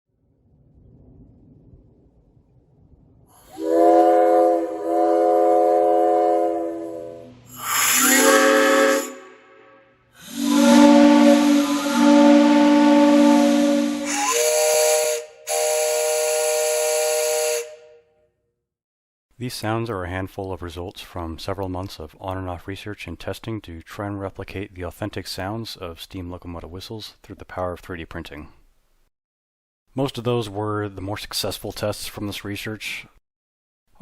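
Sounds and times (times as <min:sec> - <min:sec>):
steam whistle chord blasts: 0:03.4 - 0:18.1
air hiss: 0:07.4 - 0:09.2, 0:10.2 - 0:12.2.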